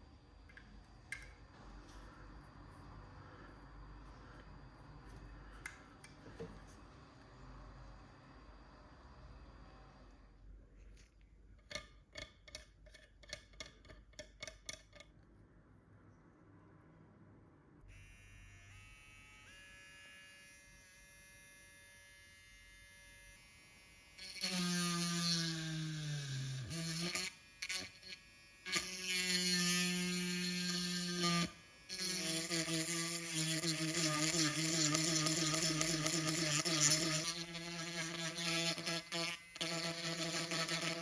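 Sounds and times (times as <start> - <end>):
faint hum: 0.0 - 11.5
rotary tool buzzing: 17.9 - 41.0.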